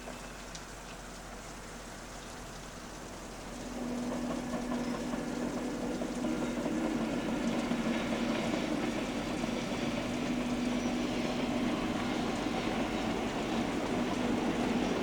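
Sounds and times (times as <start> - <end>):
electric train running: 3.4 - 15.0.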